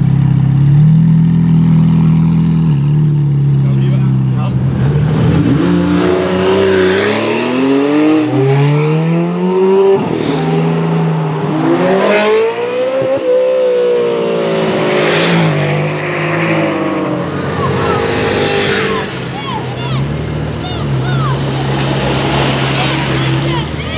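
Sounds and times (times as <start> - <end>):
car engine revving hard: 4.6 - 23.9.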